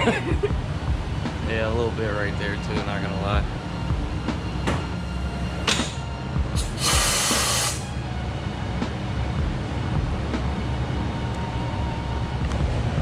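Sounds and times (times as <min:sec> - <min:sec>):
compressed air hiss: 0:06.6 - 0:07.9.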